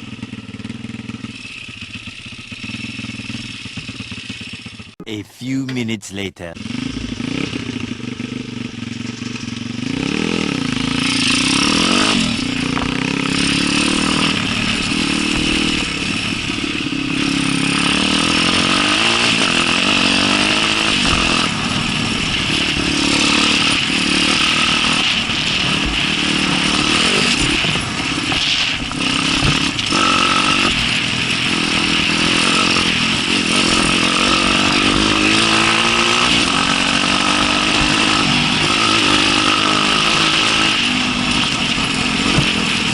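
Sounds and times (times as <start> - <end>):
dirt bike engine revving: 9.3 - 42.9.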